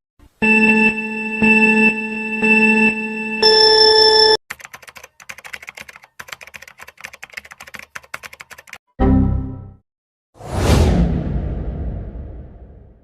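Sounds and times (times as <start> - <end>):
electronic telephone ringtone: 0.4 - 4.4
typing on computer keyboard: 4.5 - 8.8.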